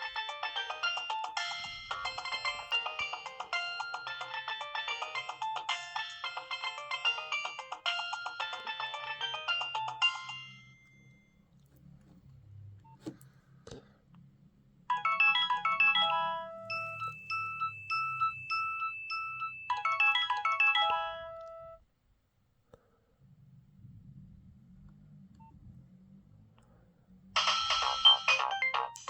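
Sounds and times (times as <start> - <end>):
mobile phone ringtone: 0.0 - 11.3, 14.9 - 21.8, 27.4 - 29.0.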